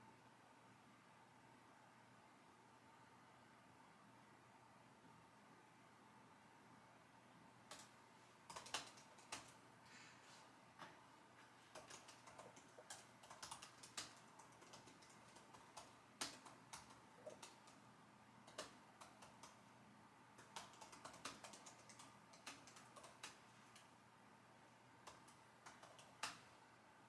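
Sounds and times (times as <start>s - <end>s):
computer keyboard typing: 7.7s - 9.6s, 11.7s - 17.8s, 18.4s - 19.7s, 20.3s - 24.0s, 25.0s - 26.6s.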